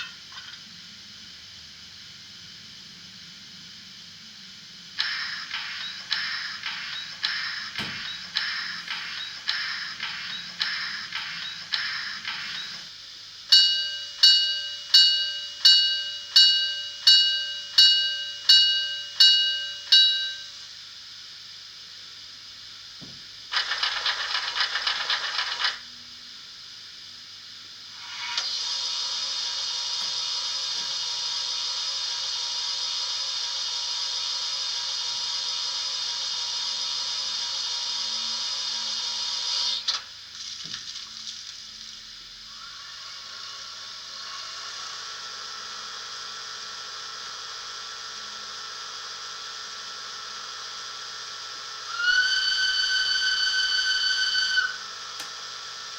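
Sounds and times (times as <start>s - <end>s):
rapid rhythmic steam hissing: 0.0s - 40.3s, 41.6s - 55.9s
bell strikes: 13.5s - 20.7s
steady steam hiss: 25.9s - 40.3s, 41.6s - 55.9s.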